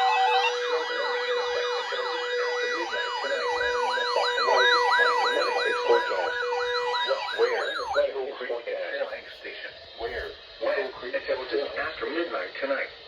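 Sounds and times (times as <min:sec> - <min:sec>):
steady alert tones: 0:00.0 - 0:08.1
electronic sirens yelping: 0:00.0 - 0:09.1.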